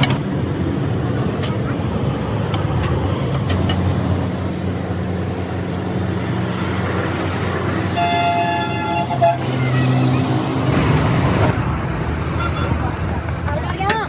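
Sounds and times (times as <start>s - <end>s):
vehicle horn: 7.9s - 9.8s.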